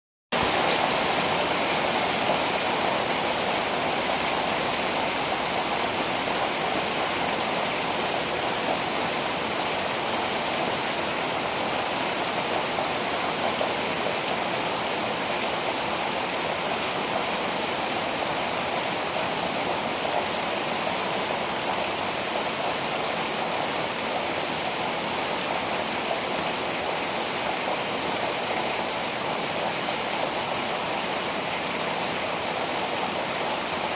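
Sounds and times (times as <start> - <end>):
rain falling steadily: 0.4 - 33.9.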